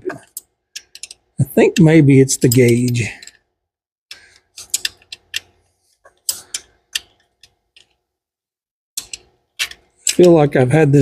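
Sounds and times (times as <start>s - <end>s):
sharp clicks and metallic taps: 0.1s - 3.5s, 4.1s - 8.0s, 9.0s - 10.4s.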